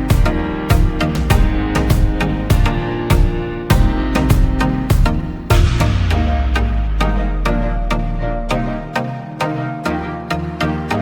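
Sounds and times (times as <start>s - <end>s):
background music with steady beat: 0.0s - 11.0s.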